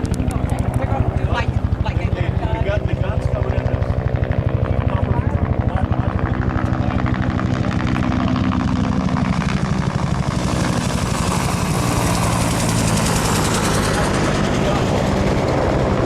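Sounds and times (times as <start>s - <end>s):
helicopter rotor blades chopping: 0.0s - 16.0s
helicopter turbine running: 0.0s - 16.0s.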